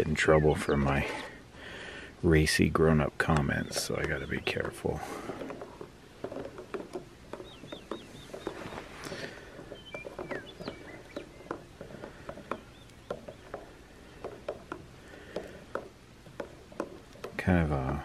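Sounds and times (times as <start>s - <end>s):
bird chirps: 0.0s - 1.4s, 2.8s - 5.6s, 7.3s - 14.5s
camp gear clicking and tapping: 2.5s - 18.0s.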